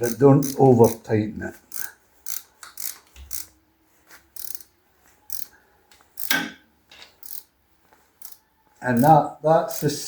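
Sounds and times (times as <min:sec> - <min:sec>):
socket ratchet clicking: 0:00.0 - 0:01.0, 0:01.7 - 0:03.5, 0:04.4 - 0:04.7, 0:05.3 - 0:05.5, 0:06.2 - 0:06.4, 0:07.2 - 0:07.5, 0:09.7 - 0:10.0.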